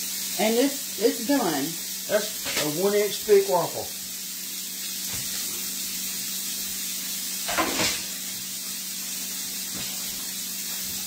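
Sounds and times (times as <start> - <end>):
food sizzling: 0.0 - 11.0.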